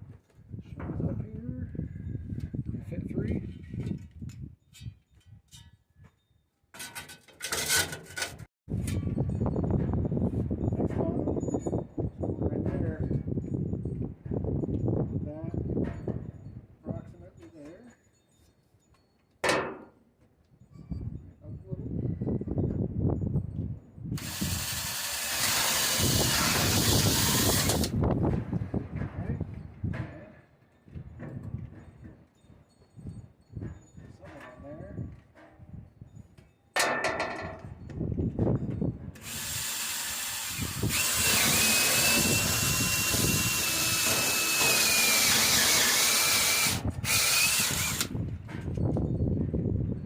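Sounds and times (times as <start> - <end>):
power drill whining: 24.2 - 27.9, 39.2 - 48.2.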